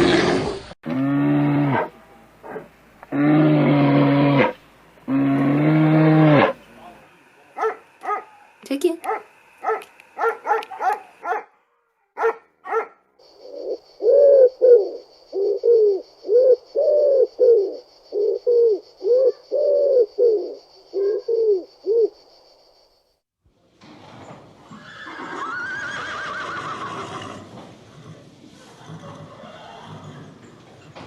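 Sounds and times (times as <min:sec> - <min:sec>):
bird calling: 0:07.6 - 0:11.4, 0:12.2 - 0:22.2.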